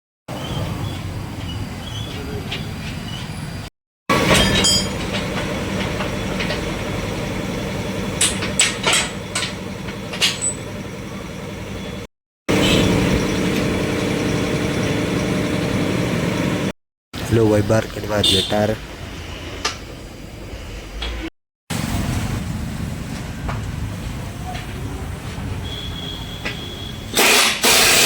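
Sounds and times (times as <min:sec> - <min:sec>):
engine running steadily: 0:04.1 - 0:16.7.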